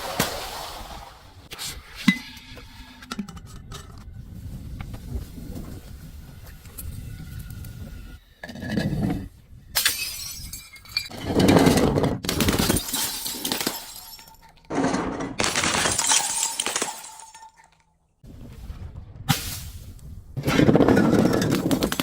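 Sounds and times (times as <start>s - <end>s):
glass bottles shattering: 9.8s - 11.4s, 12.3s - 17.9s.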